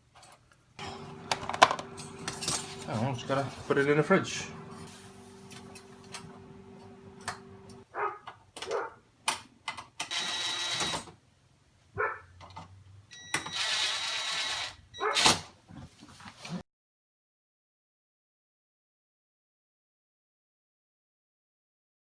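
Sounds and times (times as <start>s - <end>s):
refrigerator parts clicking and scraping: 0.1s - 4.0s
steady hum: 0.8s - 7.8s.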